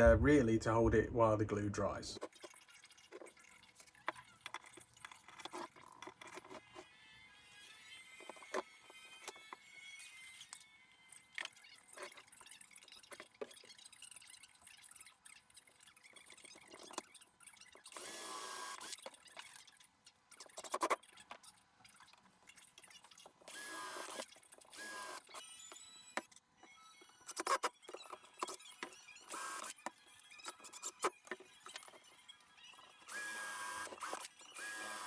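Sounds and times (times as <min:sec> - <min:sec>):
power drill driving screws: 0:23.5 - 0:25.3, 0:33.1 - 0:35.0.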